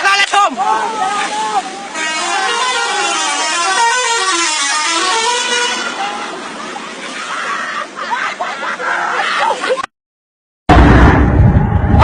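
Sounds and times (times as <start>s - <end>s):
vehicle noise: 0.0s - 8.8s
voices: 0.0s - 9.8s
multi-tone musical bus horn: 1.8s - 6.6s.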